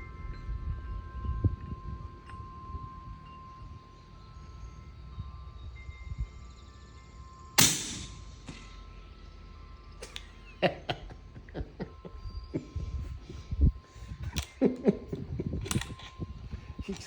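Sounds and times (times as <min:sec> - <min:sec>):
fainter crack: 0:07.6 - 0:08.8
suppressed rifle shot: 0:07.6 - 0:08.8
handling clicks and knocks: 0:15.6 - 0:16.2.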